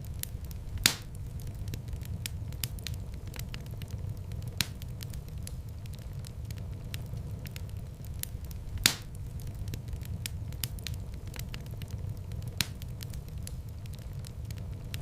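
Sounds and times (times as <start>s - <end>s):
fire crackling in fireplace: 0.0s - 15.0s
loud wood pop: 0.8s - 1.1s.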